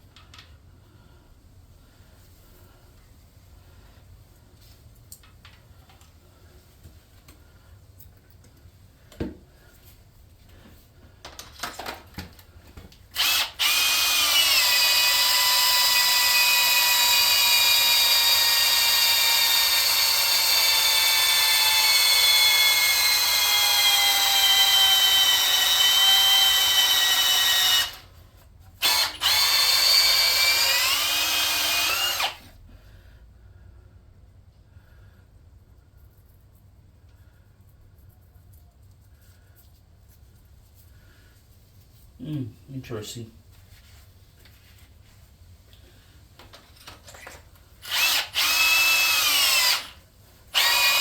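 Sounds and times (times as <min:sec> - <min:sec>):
power drill whining: 0:13.1 - 0:28.2, 0:28.8 - 0:32.6, 0:47.0 - 0:51.0.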